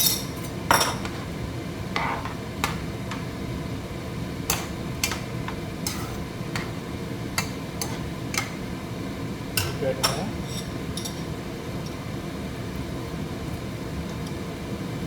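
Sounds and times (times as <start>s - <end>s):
metal spoon tapping cooking pot: 4.5s - 6.7s, 7.4s - 8.6s, 9.6s - 10.3s.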